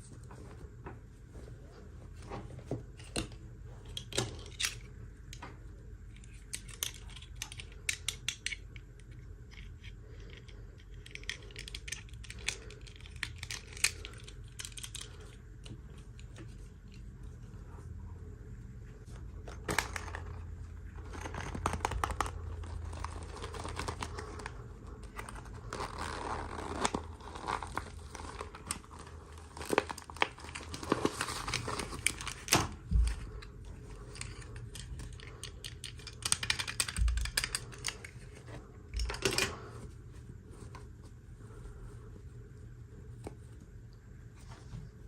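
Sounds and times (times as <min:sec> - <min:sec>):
plastic and cardboard crinkling: 0:19.3 - 0:40.8.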